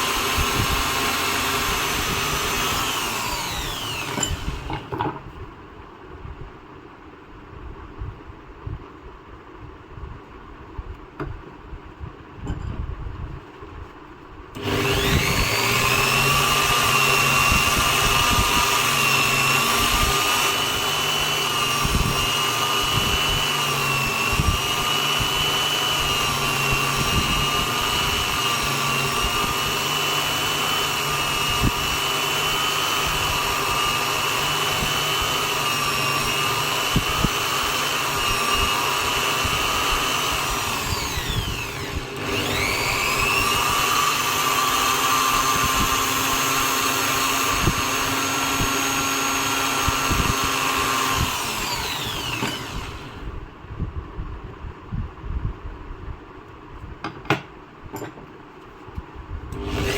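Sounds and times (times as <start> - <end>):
drill press motor whining: 0.0 - 5.3, 14.5 - 53.4, 59.5 - 59.9.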